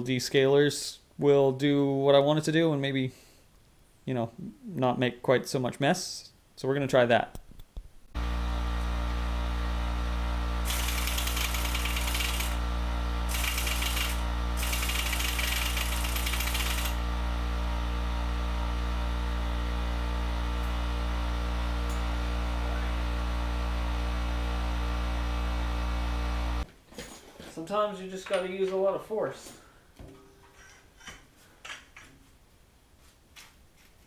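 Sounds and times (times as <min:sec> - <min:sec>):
steady low hum: 0:08.1 - 0:26.7.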